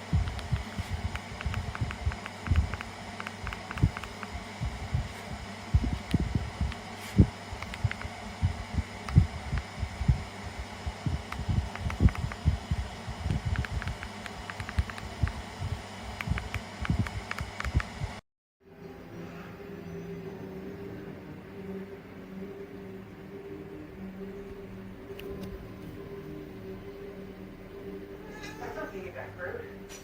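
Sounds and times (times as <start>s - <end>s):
irregular low thumps: 0.0s - 2.8s, 3.4s - 14.1s, 14.7s - 18.2s
tower fan humming: 0.0s - 30.0s.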